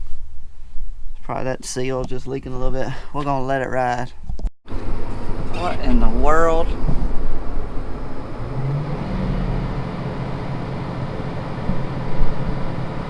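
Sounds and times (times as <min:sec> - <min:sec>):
tractor diesel engine running: 0:04.7 - 0:13.0.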